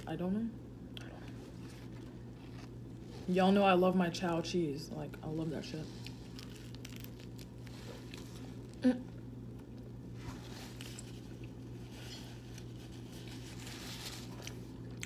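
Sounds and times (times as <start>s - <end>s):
steady low hum: 0.0s - 15.0s
chewing and mouth sounds: 0.9s - 3.2s, 14.2s - 15.0s.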